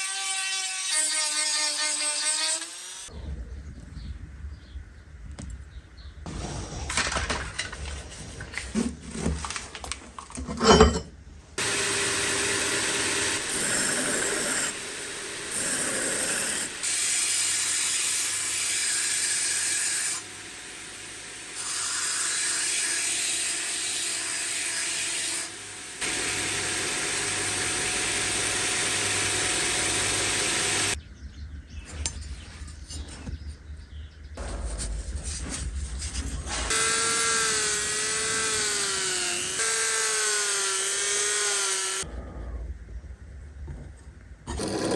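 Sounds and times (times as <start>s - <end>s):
clattering handling noise: 6.7s - 11.2s
power tool hissing abrasively: 11.6s - 31.0s, 36.5s - 42.1s.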